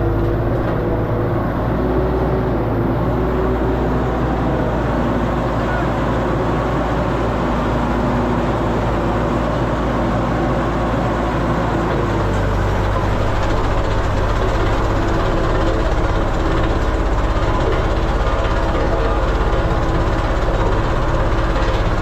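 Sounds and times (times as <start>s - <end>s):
road roller diesel engine running: 0.0s - 22.0s.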